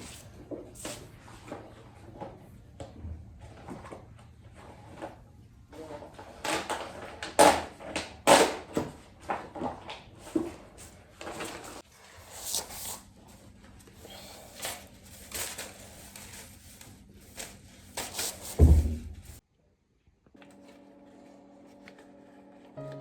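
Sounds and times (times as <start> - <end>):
heavy thump: 18.6 - 19.4
soft music: 20.9 - 23.0.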